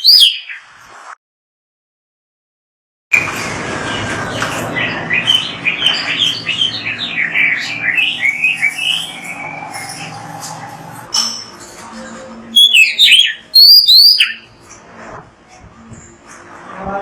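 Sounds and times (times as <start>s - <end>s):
bird singing chattering notes: 4.0s - 10.3s, 12.6s - 14.5s.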